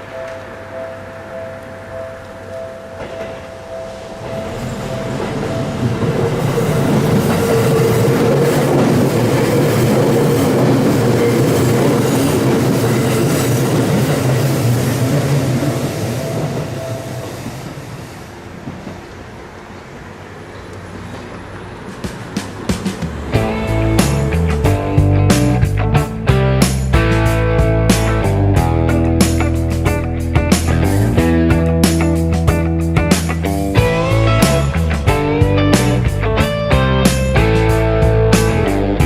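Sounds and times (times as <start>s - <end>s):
two-tone crossing warning bell: 0.0s - 18.4s
train wheels clacking over rail joints: 4.2s - 17.9s.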